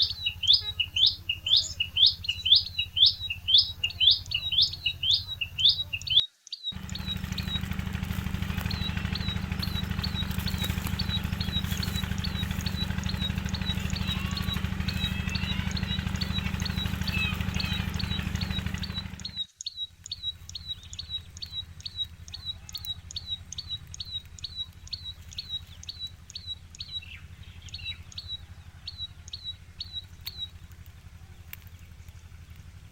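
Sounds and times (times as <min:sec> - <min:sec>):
bird chirping: 0:00.0 - 0:32.6
loud low hum: 0:06.8 - 0:19.5.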